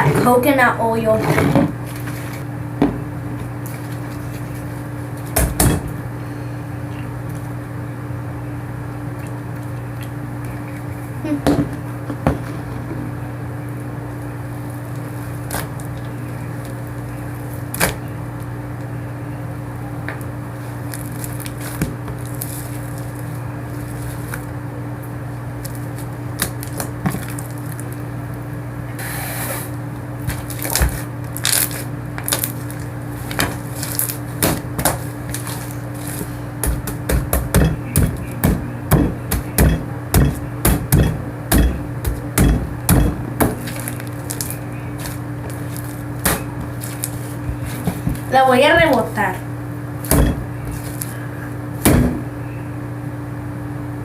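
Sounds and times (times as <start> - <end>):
low mechanical hum: 0.0 - 54.0.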